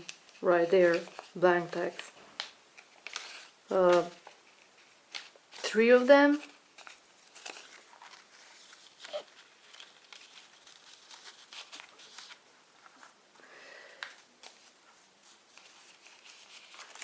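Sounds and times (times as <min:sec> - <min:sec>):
paper rustling: 0:00.0 - 0:13.3, 0:14.0 - 0:17.0.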